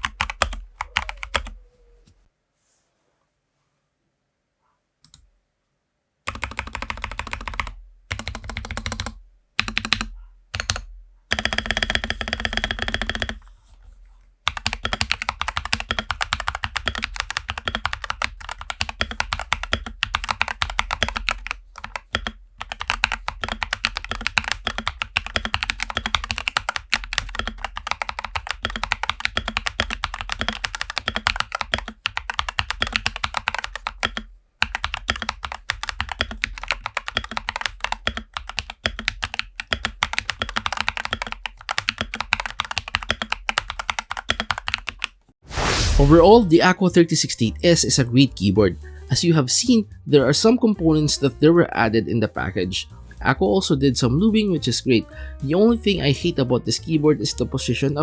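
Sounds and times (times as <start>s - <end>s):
mechanical keyboard typing: 0.0s - 1.6s, 6.3s - 13.4s, 14.5s - 45.2s.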